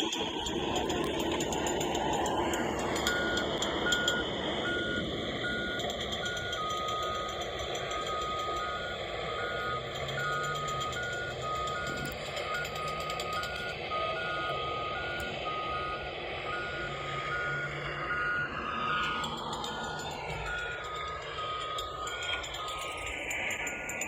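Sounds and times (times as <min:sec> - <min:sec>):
engine rumble: 0:00.0 - 0:24.0
traffic noise: 0:00.0 - 0:24.0
vehicle backup alarm beeping: 0:00.0 - 0:24.0.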